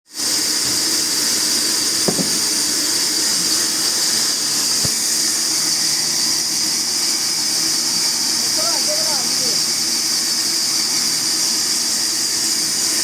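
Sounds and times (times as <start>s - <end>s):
sawmill saw running: 0.1s - 13.0s
knocks: 2.0s - 2.5s.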